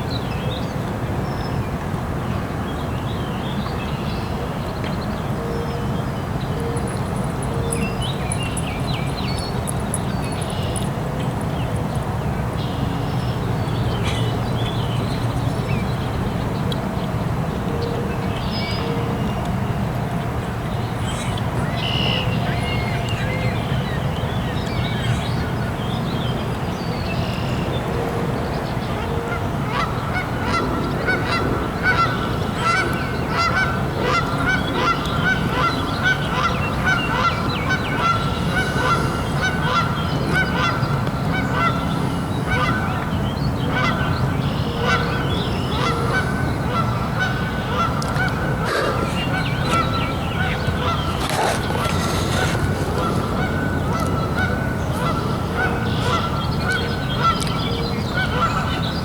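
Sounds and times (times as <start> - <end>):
geese honking: 29.7 - 43.0, 43.7 - 57.5.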